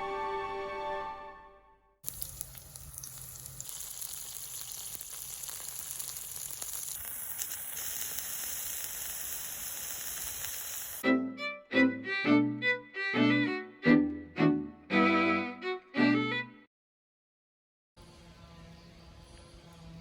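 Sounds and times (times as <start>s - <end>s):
music: 0.0s - 2.0s, 11.0s - 16.7s
meat sizzling in a pan: 2.0s - 11.0s.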